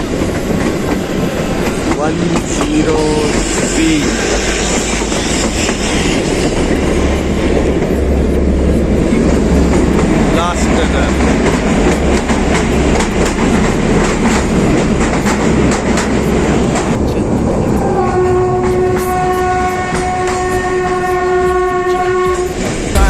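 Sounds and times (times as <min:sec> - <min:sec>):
train wheels clattering on rails: 0:00.0 - 0:23.0
train horn blast: 0:17.8 - 0:22.6.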